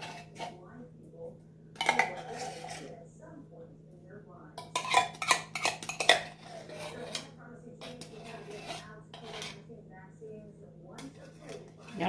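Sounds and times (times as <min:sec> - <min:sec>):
spoon scraping and knocking in a can: 0:00.0 - 0:00.6, 0:01.8 - 0:03.0, 0:04.6 - 0:09.7, 0:11.0 - 0:12.0.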